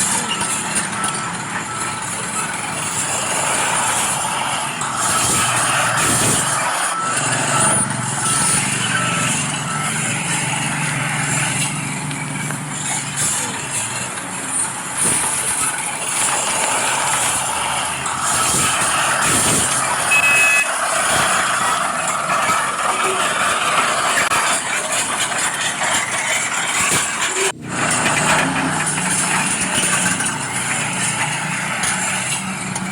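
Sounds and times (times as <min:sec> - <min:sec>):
diesel-style engine: 0:00.0 - 0:32.9
faint short beeps: 0:20.1 - 0:20.7.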